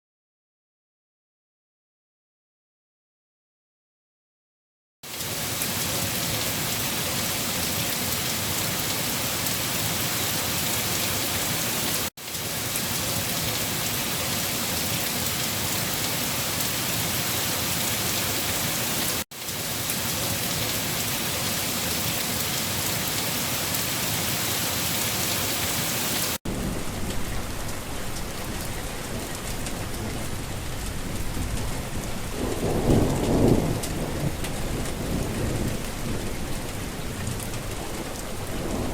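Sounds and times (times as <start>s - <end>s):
heavy rain: 5.0s - 38.9s
low rumble of thunder: 26.5s - 38.9s.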